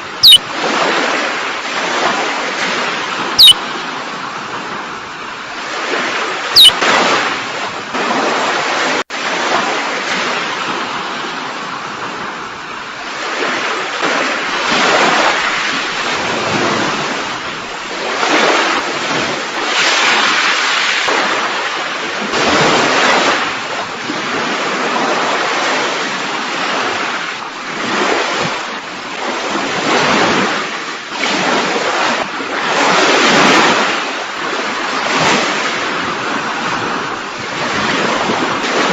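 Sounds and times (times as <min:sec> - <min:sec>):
sea waves surging: 0:00.0 - 0:38.9
high falling whistle: 0:00.2 - 0:00.5, 0:03.4 - 0:03.6, 0:06.6 - 0:06.8.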